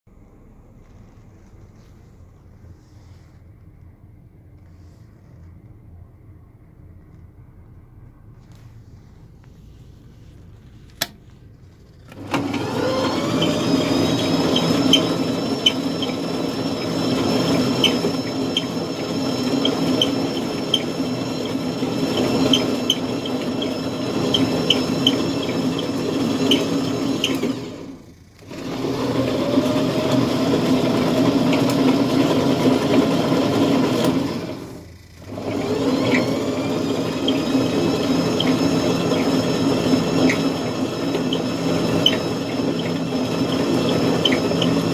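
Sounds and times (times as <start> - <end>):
lathe motor whining: 12.1 - 44.9.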